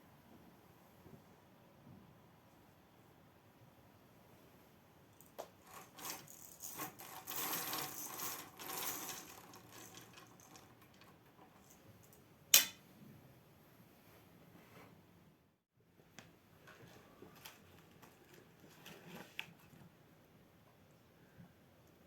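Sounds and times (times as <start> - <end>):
objects rubbing and rustling: 5.2 - 12.2, 16.7 - 19.9
sharp click: 12.5 - 12.8.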